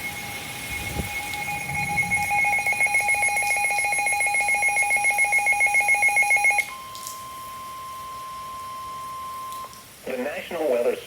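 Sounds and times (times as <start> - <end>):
pulsing electronic alert beeping: 0.0 - 6.8
steady alarm tone: 0.0 - 9.8.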